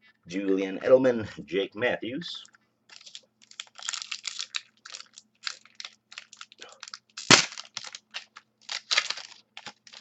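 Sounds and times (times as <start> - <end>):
cards rustling and clicking: 2.9 - 10.0.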